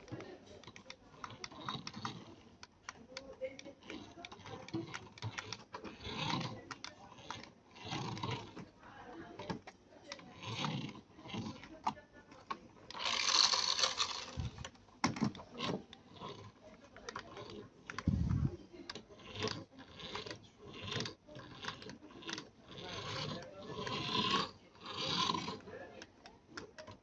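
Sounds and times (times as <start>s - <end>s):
plastic parts clicking: 0.0s - 24.1s
rustling scrapes: 12.9s - 14.7s.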